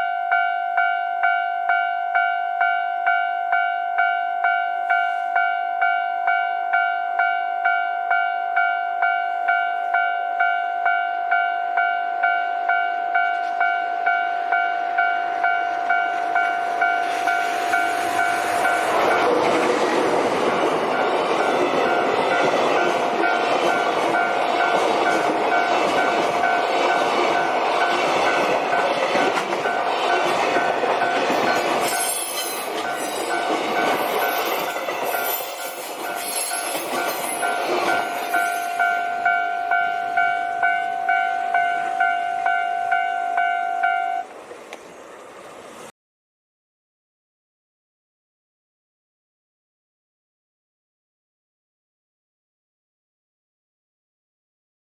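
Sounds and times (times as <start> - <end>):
level-crossing alarm bell ringing: 0.0 - 19.6, 20.8 - 44.3
freight train passing: 0.0 - 45.9
train wheels clattering on rails: 16.8 - 38.9.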